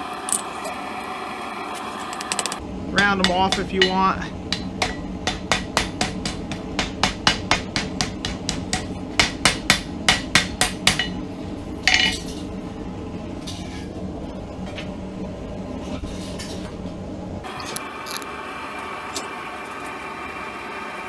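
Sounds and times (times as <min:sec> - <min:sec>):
hammer striking steel on anvil: 0:03.2 - 0:11.2.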